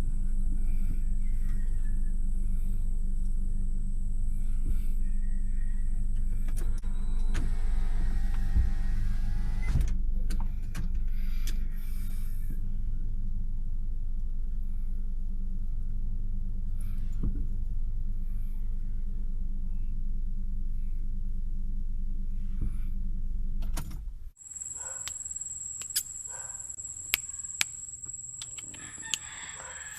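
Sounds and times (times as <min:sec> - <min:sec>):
vehicle engine hum: 0:00.0 - 0:29.9
power window motor whirring: 0:06.6 - 0:10.0
motor clicks: 0:06.6 - 0:10.4
motor knock: 0:07.2 - 0:09.9.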